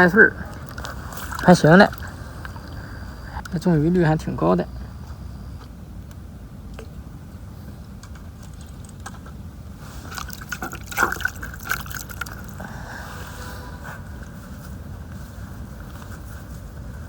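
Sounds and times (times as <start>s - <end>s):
low steady background: 0.0s - 17.0s
water splashes and drips: 0.6s - 2.8s, 10.0s - 12.6s.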